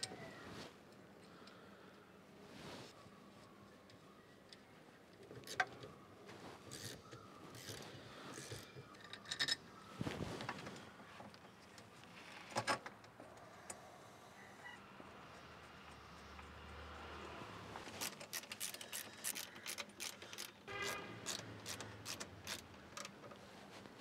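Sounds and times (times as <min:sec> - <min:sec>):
small metal parts clicking: 0:17.8 - 0:23.3.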